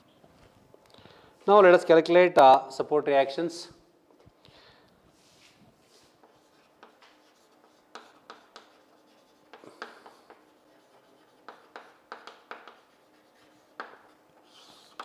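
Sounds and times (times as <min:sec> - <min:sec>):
pen scratching: 0:06.2 - 0:15.0.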